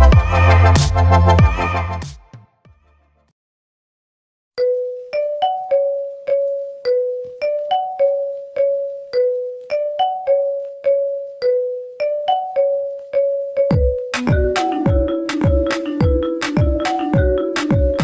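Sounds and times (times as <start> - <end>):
bell-like ringtone melody: 4.6 - 18.0.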